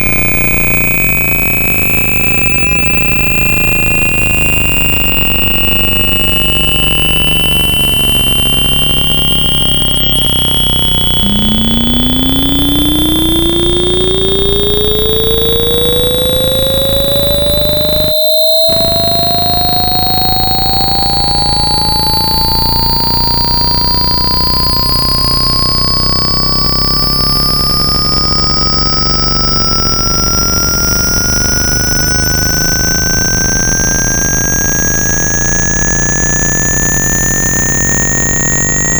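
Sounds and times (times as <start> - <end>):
high test tones stepping upward: 0.0 - 38.9
lower tone sweeping upward: 0.0 - 38.9
steady low noise: 10.4 - 17.6.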